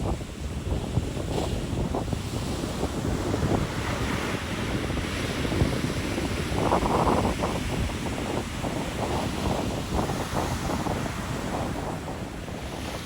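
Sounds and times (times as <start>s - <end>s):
ocean surf on a beach: 0.0s - 13.0s
wind buffeting microphone: 0.0s - 13.0s.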